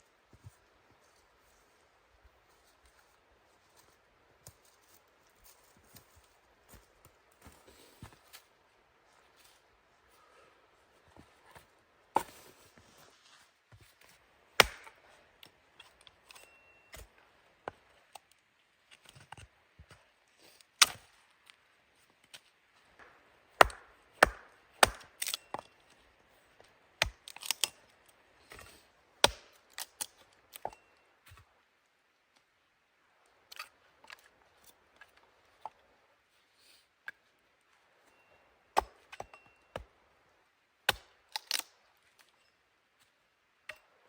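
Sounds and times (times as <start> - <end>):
axe chopping wood: 14.6 - 15.0, 23.0 - 25.6, 27.0 - 27.7, 29.2 - 30.7, 38.8 - 39.9, 40.9 - 41.6.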